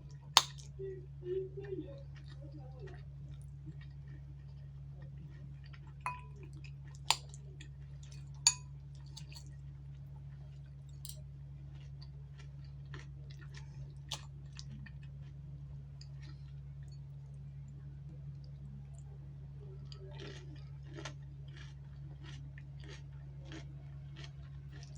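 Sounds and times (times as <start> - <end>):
steady low hum: 0.0 - 24.9
chewing with mouth clicks: 0.1 - 0.8, 1.6 - 9.6, 10.2 - 19.1, 19.7 - 24.9
sharp ringing taps: 6.1 - 6.3.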